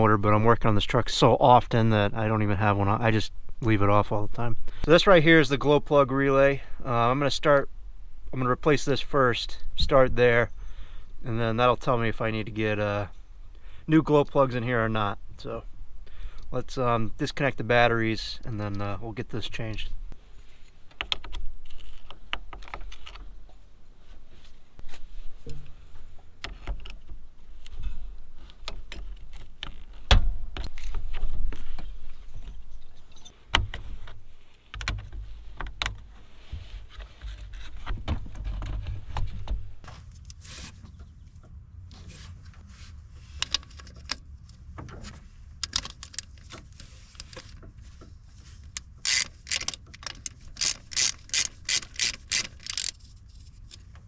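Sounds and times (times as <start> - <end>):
tools and metal parts clinking: 32.2 - 33.4.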